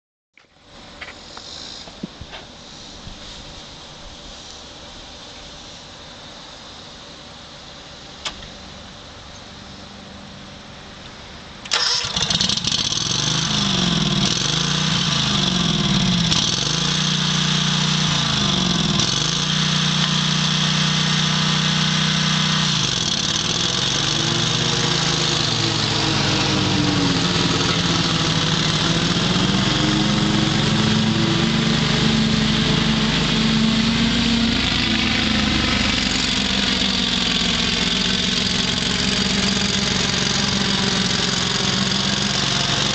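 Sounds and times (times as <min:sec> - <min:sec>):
lawn mower engine running: 0:11.5 - 0:42.9
lawn mower engine cranking: 0:11.6 - 0:42.9.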